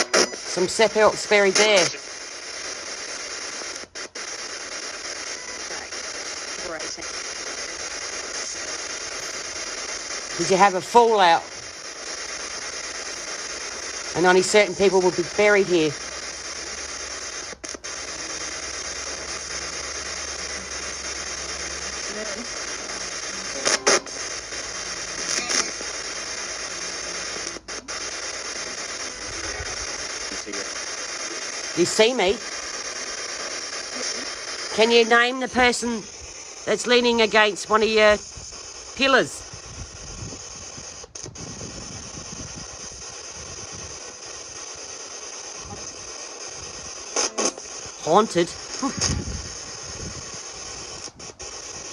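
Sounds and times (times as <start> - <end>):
choppy ratchet-like crackle: 0.0 - 51.9
radio static hiss: 0.0 - 51.9
low hum: 4.9 - 31.8.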